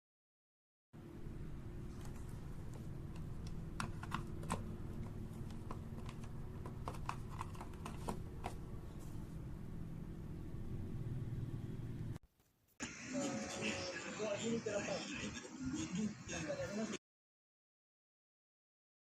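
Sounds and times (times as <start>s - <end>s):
steady low hum: 1.0s - 12.2s.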